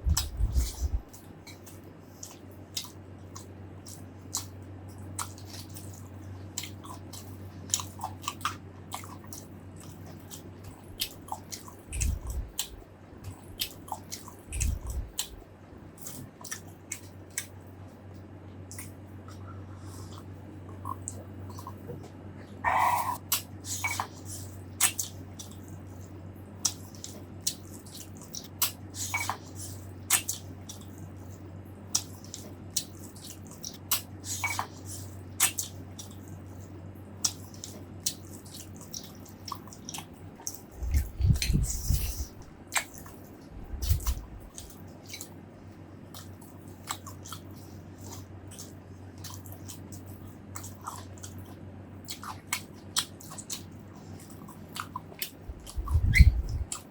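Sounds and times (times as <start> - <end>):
person chewing: 0.0 - 15.4, 16.0 - 17.6, 22.7 - 45.4, 46.1 - 56.9
steady low hum: 0.0 - 56.9
wet mouth clicks and smacks: 24.8 - 25.7, 35.4 - 36.2, 37.2 - 43.2, 46.1 - 56.9.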